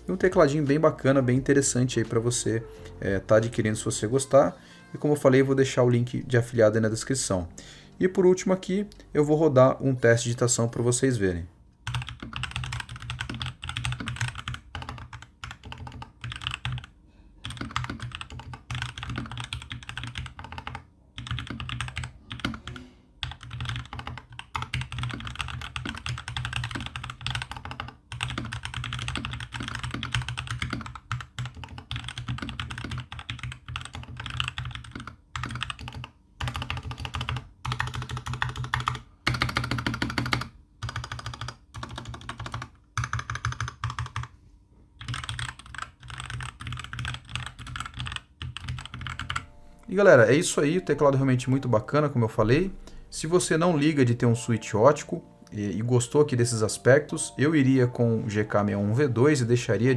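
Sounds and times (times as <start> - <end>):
fast mechanical keyboard typing: 11.8 - 44.3, 45.0 - 49.5.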